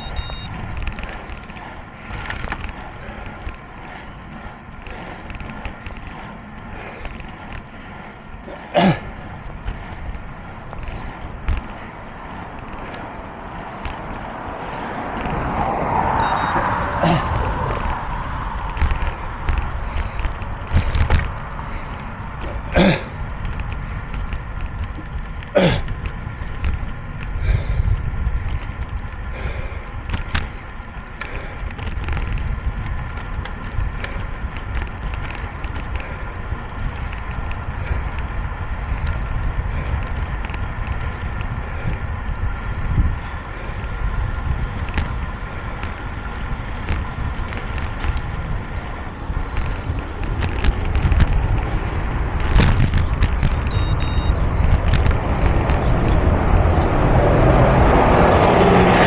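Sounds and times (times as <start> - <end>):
low rumble of wind: 0.0 - 59.0
rolling and rattling noise: 0.0 - 59.0
person breathing heavily: 0.6 - 16.2, 19.0 - 24.4, 25.5 - 32.6, 35.2 - 50.7.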